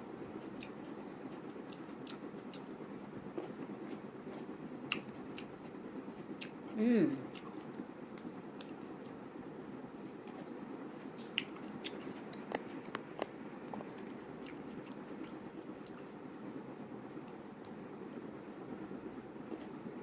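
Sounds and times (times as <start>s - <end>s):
person chewing food: 0.4s - 2.7s, 3.3s - 9.2s, 11.1s - 16.1s.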